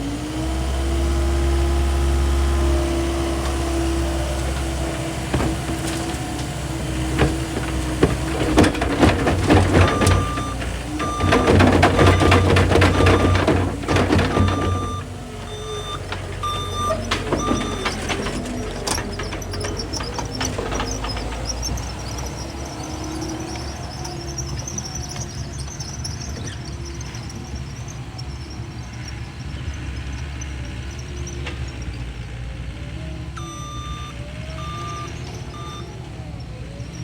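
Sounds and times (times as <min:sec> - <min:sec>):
skid steer engine running: 0:00.0 - 0:37.0
knocks and clatter: 0:03.2 - 0:28.4
reversing alarm beeping: 0:09.4 - 0:18.2, 0:33.4 - 0:36.0.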